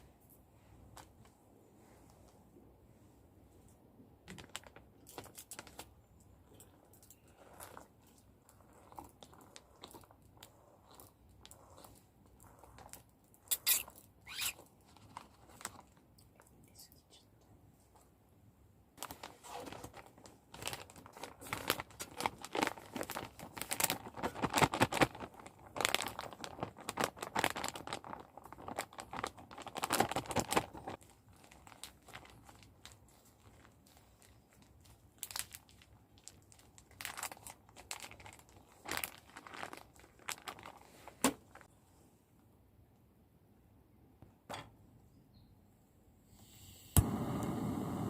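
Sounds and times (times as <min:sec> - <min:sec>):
packaging crinkling and tearing: 0:04.3 - 0:16.0, 0:19.0 - 0:41.7.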